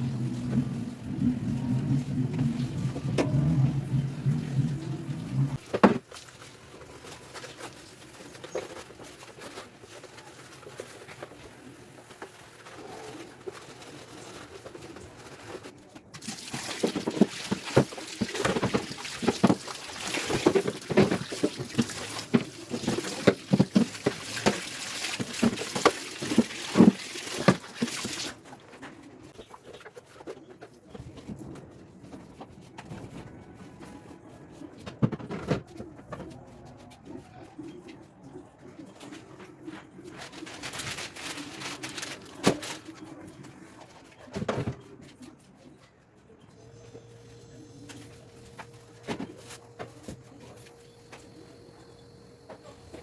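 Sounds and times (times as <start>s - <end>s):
low hum: 0.0s - 5.6s
wet scrubbing and wiping: 16.3s - 28.6s.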